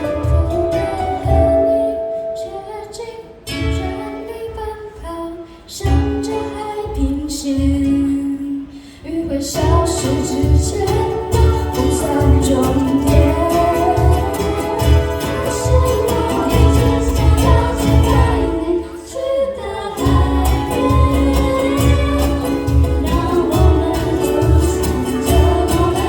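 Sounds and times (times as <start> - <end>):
drum beat: 0.0 - 1.6, 9.6 - 18.6, 20.0 - 26.0
strummed ukuleles: 0.0 - 26.0
woman singing: 0.0 - 26.0.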